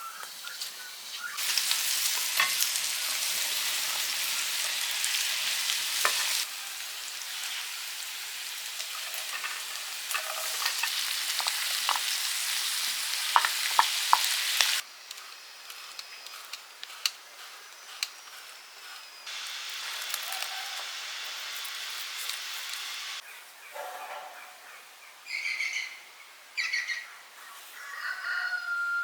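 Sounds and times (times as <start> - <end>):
food sizzling in a hot pan: 0.1 - 14.8, 18.8 - 23.2.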